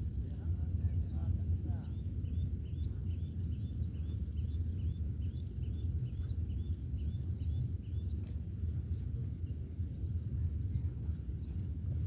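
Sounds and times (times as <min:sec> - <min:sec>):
steady low rumble: 0:00.0 - 0:12.0
small bird chirping: 0:01.8 - 0:08.2.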